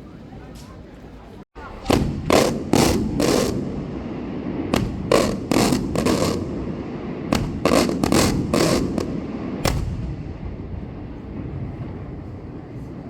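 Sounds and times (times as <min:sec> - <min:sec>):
fireworks bangs: 0:01.6 - 0:13.0
low rumble: 0:09.7 - 0:13.0.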